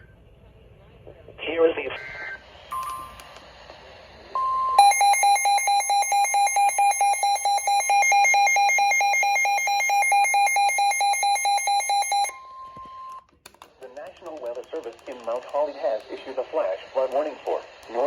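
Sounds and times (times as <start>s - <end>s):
rapid electronic alarm beeps: 4.4s - 13.2s.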